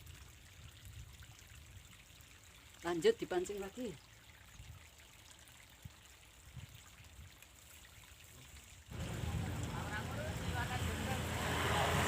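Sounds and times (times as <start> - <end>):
faint trickling water: 0.0 - 12.0
engine-like rumble: 8.9 - 12.0.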